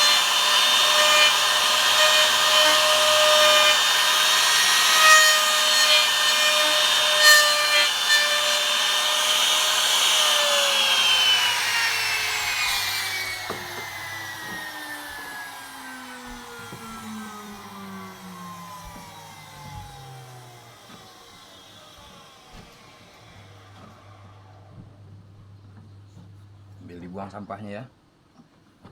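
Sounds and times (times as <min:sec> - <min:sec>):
router cutting wood: 0:00.0 - 0:26.5
motor whine coasting down: 0:07.9 - 0:26.8.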